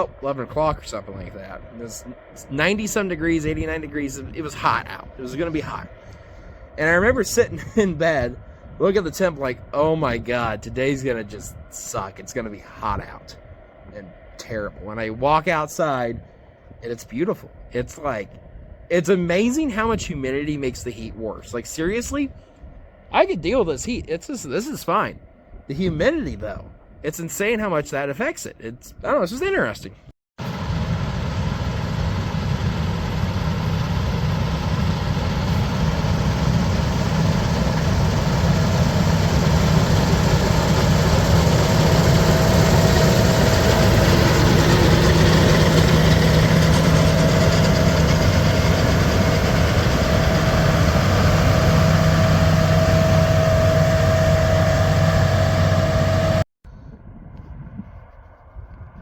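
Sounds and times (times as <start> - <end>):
thin steady whine: 0.0 - 20.8, 30.4 - 56.4
heavy diesel engine running: 30.4 - 56.4.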